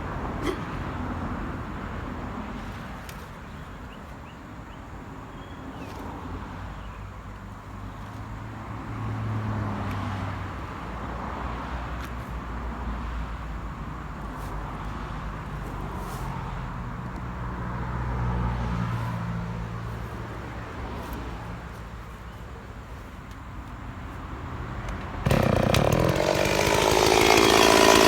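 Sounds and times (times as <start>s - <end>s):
road noise: 0.0s - 28.0s
engine hum: 24.6s - 28.0s.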